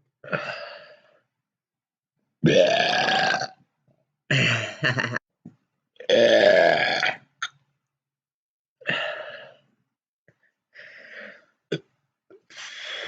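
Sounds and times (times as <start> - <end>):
woman belching: 2.4 - 3.6, 6.1 - 7.2.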